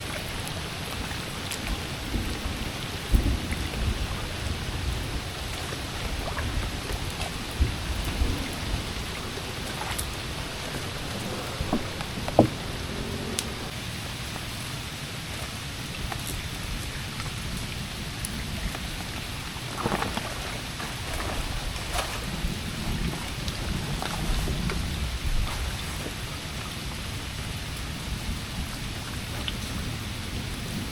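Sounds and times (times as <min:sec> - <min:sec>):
water drips: 0:00.0 - 0:30.4
close raindrops striking: 0:00.0 - 0:30.9
heavy rain falling: 0:00.0 - 0:30.9
low rumbles: 0:00.0 - 0:30.9
low rumble: 0:00.4 - 0:14.7.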